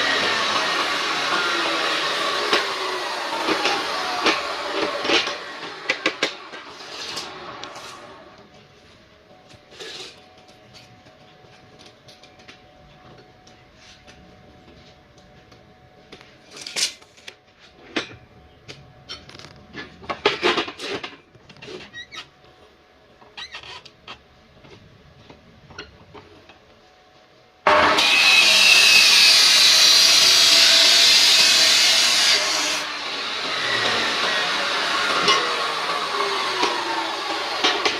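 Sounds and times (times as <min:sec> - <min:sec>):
metal cut-off saw running: 0:00.0 - 0:08.4, 0:27.7 - 0:37.9.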